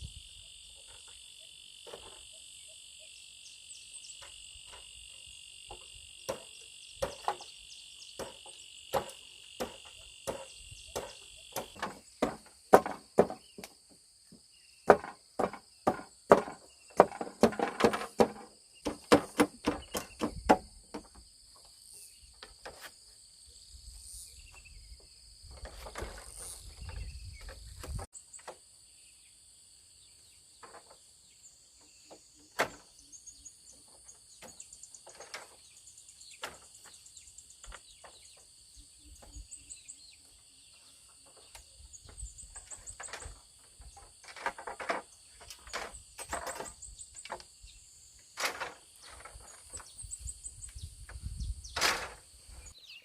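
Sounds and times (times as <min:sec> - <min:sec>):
high insect drone: 0:00.0 - 0:51.0
sharp tool strike knocks: 0:05.7 - 0:07.5, 0:08.2 - 0:13.7.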